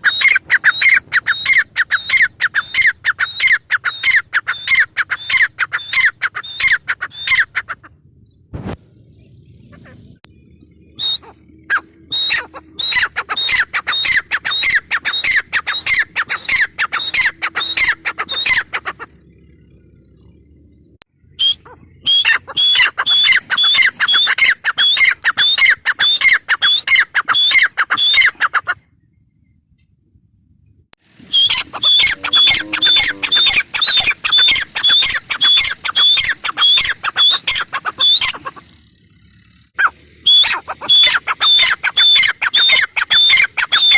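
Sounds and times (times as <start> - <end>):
francolin calling sharp notes: 31.2 - 38.7.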